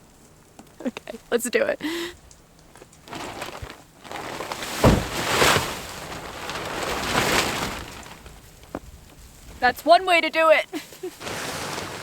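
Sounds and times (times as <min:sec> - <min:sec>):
tarp rustling: 0:02.7 - 0:12.0
thump: 0:04.7 - 0:05.7.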